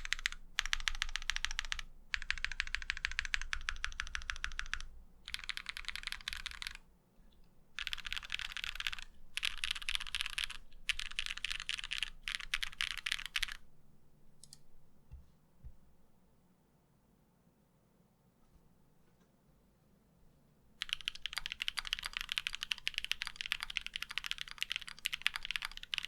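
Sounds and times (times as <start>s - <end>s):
mechanical keyboard typing: 0.0s - 6.8s, 7.8s - 13.6s, 20.8s - 26.0s.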